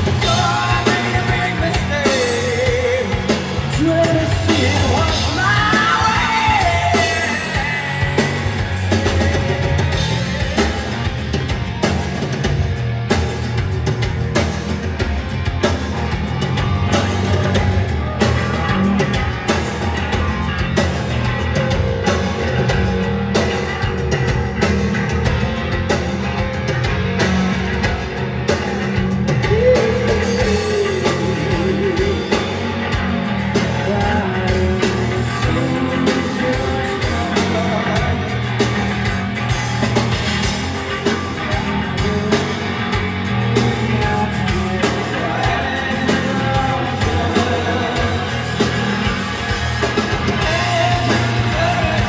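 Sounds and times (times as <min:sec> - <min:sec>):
person singing: 0:00.0 - 0:08.8, 0:29.4 - 0:38.7, 0:41.1 - 0:49.4, 0:50.2 - 0:52.0
bass guitar: 0:00.0 - 0:52.0
distorted electric guitar: 0:00.0 - 0:52.0
drum kit: 0:00.0 - 0:52.0.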